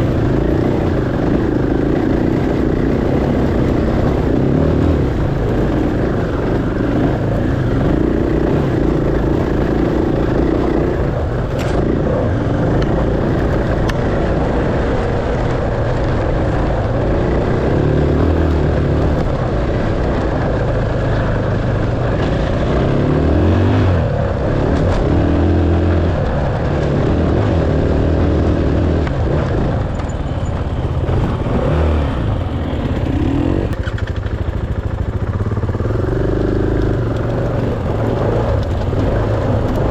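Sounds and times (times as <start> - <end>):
dirt bike engine revving: 0.0 - 39.9.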